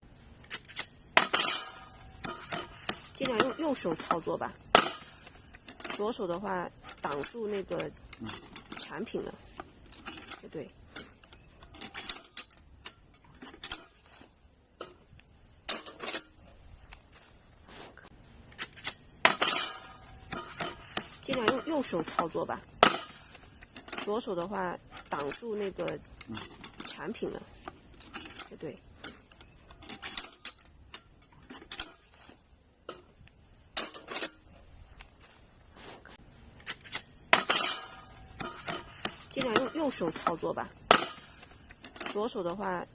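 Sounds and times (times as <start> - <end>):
metal clanks: 0.4 - 16.4, 18.5 - 34.6, 36.6 - 42.6
metal clatter: 0.4 - 16.4, 18.5 - 34.6, 36.6 - 42.6
metal fire pit clinking and rattling: 0.4 - 17.3, 18.4 - 35.4, 36.5 - 42.9
sharp metal knocks: 1.2 - 5.9, 19.2 - 23.9, 37.3 - 42.1.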